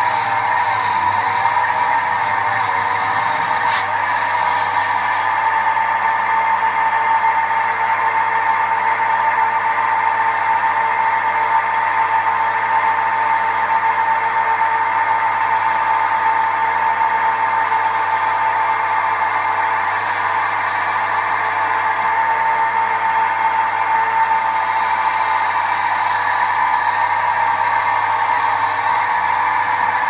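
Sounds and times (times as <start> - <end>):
gouge cutting hiss: 0.0 - 5.4, 19.8 - 22.1, 24.4 - 30.0
wood lathe motor whine: 0.0 - 30.0.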